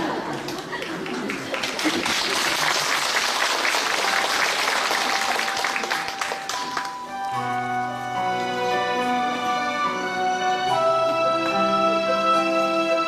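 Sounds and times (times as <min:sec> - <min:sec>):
audience applauding: 0:00.3 - 0:07.1
music with sustained notes: 0:03.6 - 0:13.0.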